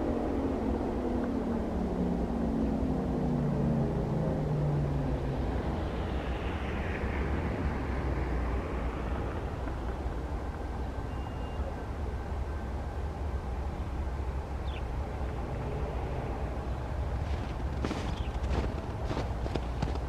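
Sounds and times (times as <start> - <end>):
steady low rumble: 12.2 - 20.0.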